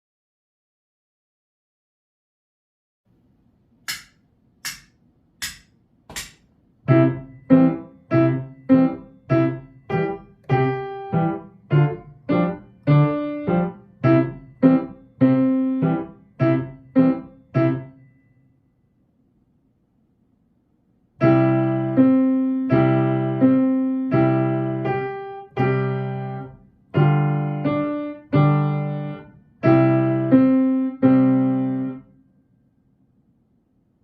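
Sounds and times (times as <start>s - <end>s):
sharp count-in clicks: 3.9s - 6.5s
piano playing a march: 6.9s - 18.0s, 21.2s - 32.0s.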